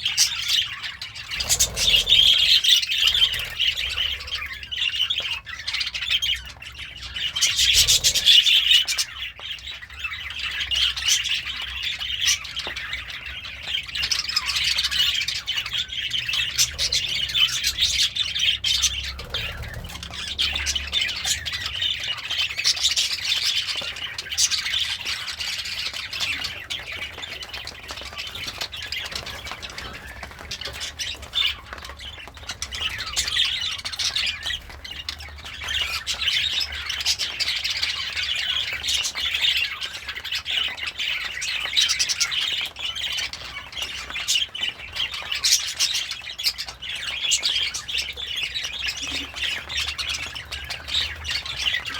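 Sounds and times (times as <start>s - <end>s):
budgerigar chattering and warbling: 0.0s - 11.4s, 13.7s - 26.5s.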